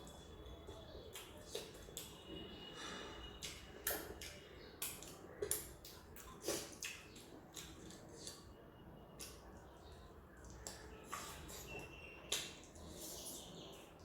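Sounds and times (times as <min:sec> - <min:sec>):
wet mouth chewing sounds: 0:00.0 - 0:02.2, 0:03.4 - 0:08.5.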